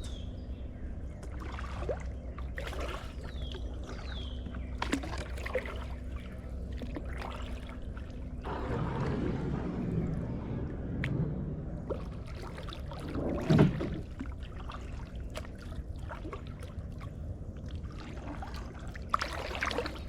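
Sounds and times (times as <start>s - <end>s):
paddle dipping in water: 1.2s - 10.3s, 11.8s - 20.0s
rush of water: 8.4s - 16.5s.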